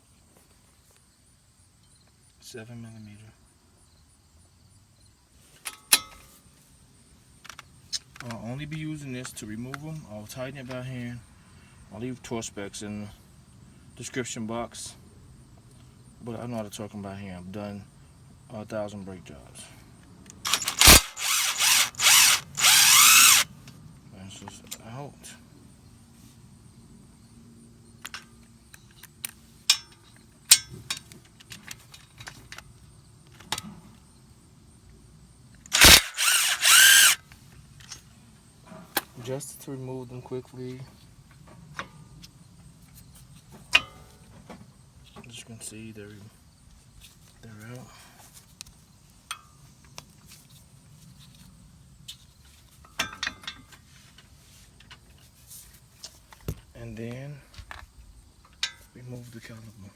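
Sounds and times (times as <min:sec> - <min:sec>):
metal parts clicking: 0:20.5 - 0:23.4, 0:35.7 - 0:37.2
metallic clinks of tools: 0:20.5 - 0:23.4
power tool spinning: 0:20.5 - 0:23.5, 0:35.7 - 0:37.2.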